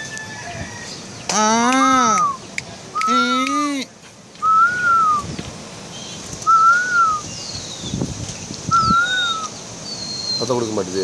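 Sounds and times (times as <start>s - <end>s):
whistled notes: 4.4s - 5.3s, 6.4s - 7.3s, 8.7s - 9.5s.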